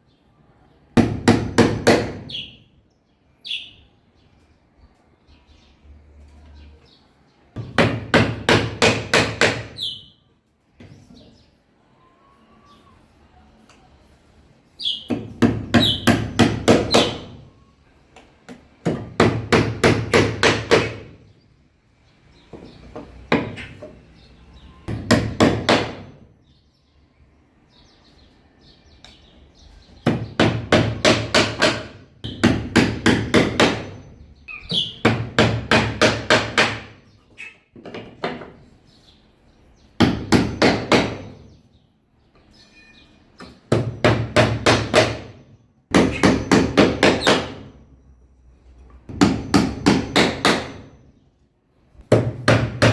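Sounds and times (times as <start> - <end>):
hammer driving a nail: 1.0 - 2.3, 7.6 - 9.8, 15.1 - 17.4, 18.5 - 21.2, 24.9 - 26.2, 30.0 - 34.0, 35.0 - 36.9, 40.0 - 41.4, 43.4 - 47.7, 49.1 - 50.9, 52.1 - 52.9.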